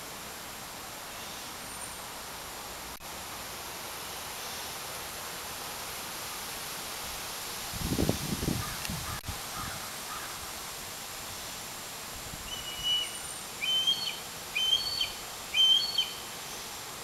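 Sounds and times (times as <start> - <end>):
steady background hiss: 0.0 - 17.0
bird calling: 12.5 - 16.7.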